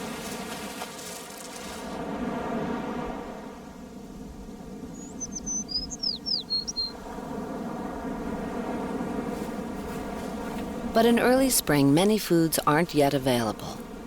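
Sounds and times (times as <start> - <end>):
songbird singing: 4.9 - 7.0.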